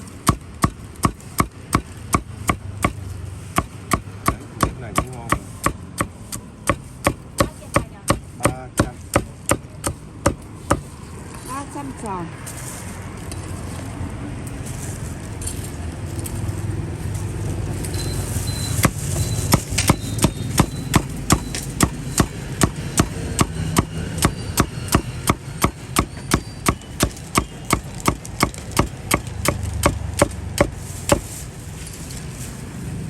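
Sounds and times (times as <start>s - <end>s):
traffic hum: 0.0s - 33.0s
cleaver chopping on wooden block: 0.2s - 10.9s, 18.8s - 31.3s.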